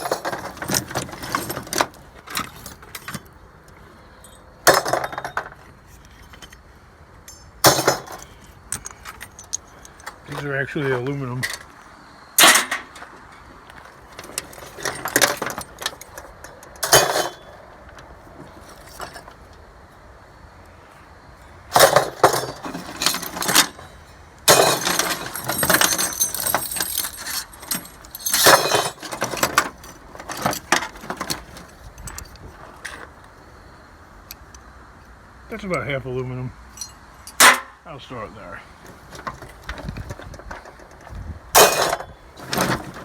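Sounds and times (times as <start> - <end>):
aluminum scrap clattering: 7.3 - 9.2, 14.2 - 17.5, 21.7 - 31.7, 41.6 - 43.0.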